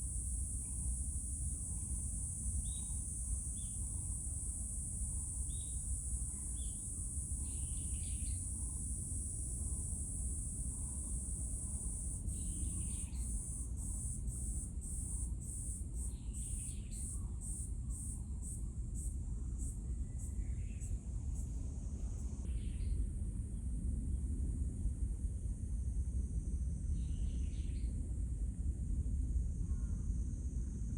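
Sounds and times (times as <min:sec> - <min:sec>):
insects droning: 0:00.0 - 0:22.9.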